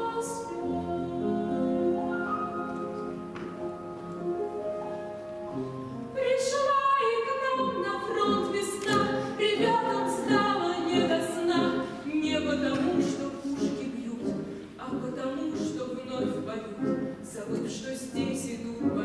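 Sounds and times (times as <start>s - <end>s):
person singing: 0.0s - 3.0s
instrumental accompaniment: 0.0s - 6.4s.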